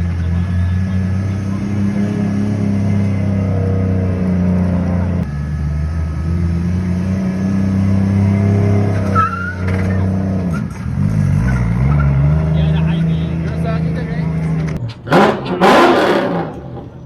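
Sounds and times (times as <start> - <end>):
car engine running: 0.0 - 9.0.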